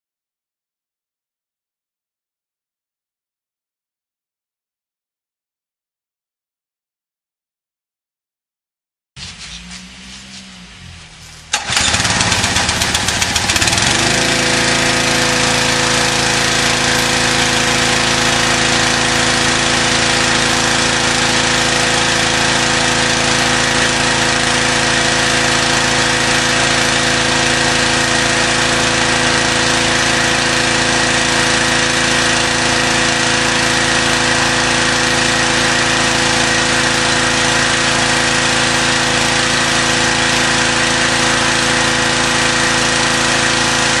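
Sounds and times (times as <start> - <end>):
pressure washer running: 9.2 - 44.0.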